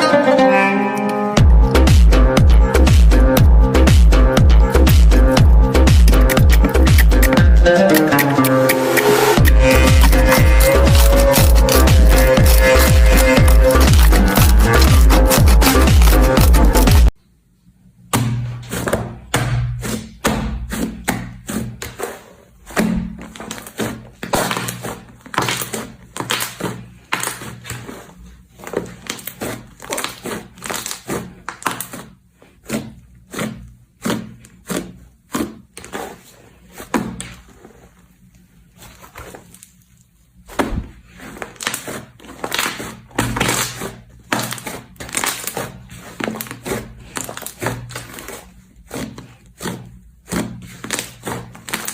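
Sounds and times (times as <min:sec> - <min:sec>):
foam slime clicking and popping: 0:23.3 - 0:27.7, 0:28.9 - 0:36.0, 0:41.4 - 0:51.9.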